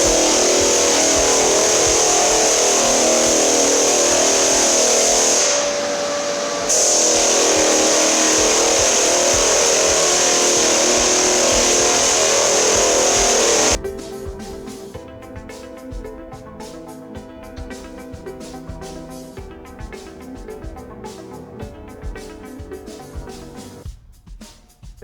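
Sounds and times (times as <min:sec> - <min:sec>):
floor sanding machine hiss and hum: 0:00.0 - 0:14.8.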